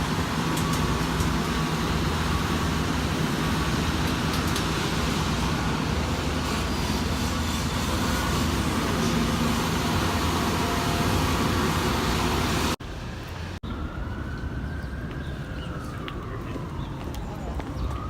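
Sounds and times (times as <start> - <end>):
dense road traffic: 0.0 - 18.0
siren rising and falling: 13.6 - 18.0.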